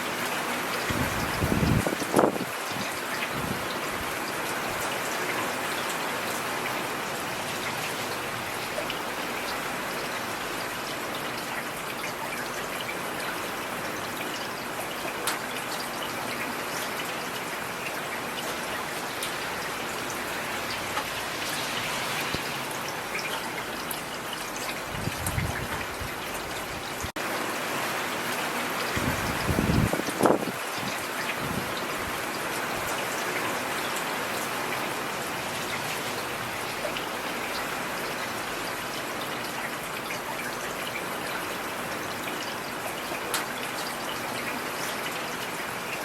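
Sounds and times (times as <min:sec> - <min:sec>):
rain falling on a street: 0:00.0 - 0:46.0.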